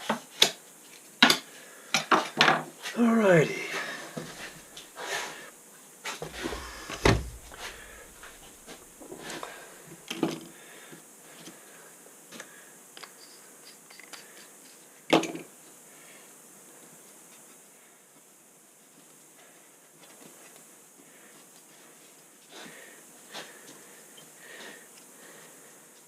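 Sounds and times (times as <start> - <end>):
knocks and clicks of hand tools: 6.2 - 9.3.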